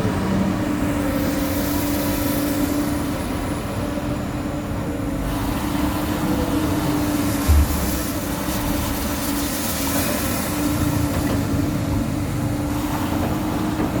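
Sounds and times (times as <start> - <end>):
excavator diesel engine running: 0.0 - 14.0
low thump: 7.4 - 8.0.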